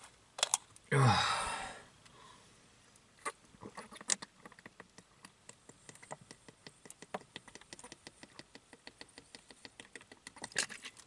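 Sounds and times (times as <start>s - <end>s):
raindrops ticking: 4.1s - 10.6s.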